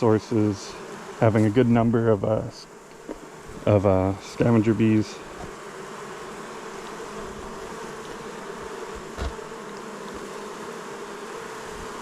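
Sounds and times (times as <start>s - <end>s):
honeybees buzzing: 0.0s - 12.0s.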